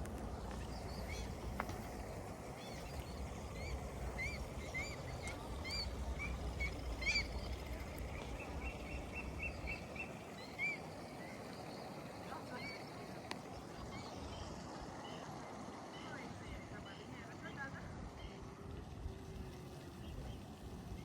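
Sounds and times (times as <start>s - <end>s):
small birds chirping: 0.0s - 15.3s
low steady rumble: 0.0s - 21.0s.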